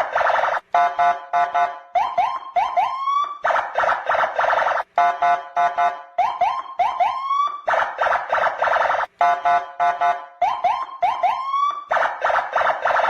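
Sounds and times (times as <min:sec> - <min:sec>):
police siren whooping: 0:00.0 - 0:09.1, 0:10.4 - 0:13.0
buzzing horn blasts: 0:04.9 - 0:06.1, 0:09.2 - 0:10.4.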